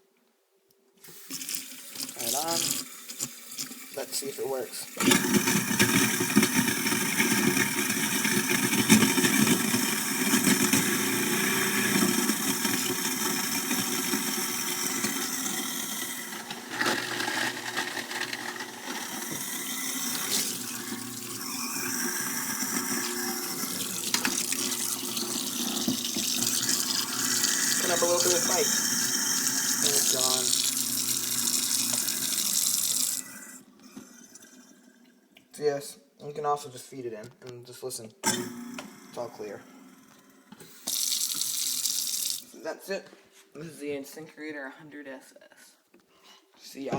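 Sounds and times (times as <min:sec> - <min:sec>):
tap water running into sink: 0:01.0 - 0:16.6, 0:18.3 - 0:34.6, 0:40.5 - 0:42.5
garbage disposal grinding: 0:01.1 - 0:34.8, 0:38.2 - 0:42.5.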